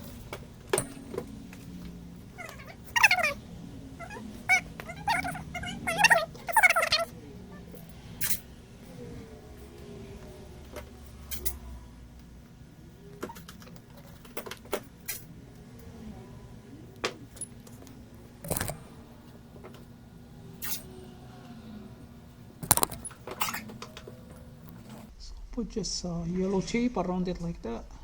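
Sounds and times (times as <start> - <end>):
small tools clicking and tapping: 0.0 - 3.4, 10.2 - 11.6, 17.0 - 19.9, 22.6 - 25.1.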